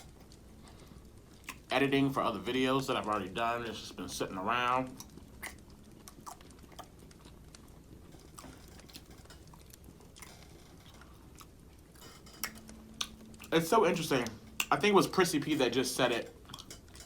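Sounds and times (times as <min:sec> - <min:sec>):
person chewing food: 0:00.0 - 0:01.7, 0:04.9 - 0:13.6, 0:16.3 - 0:17.0.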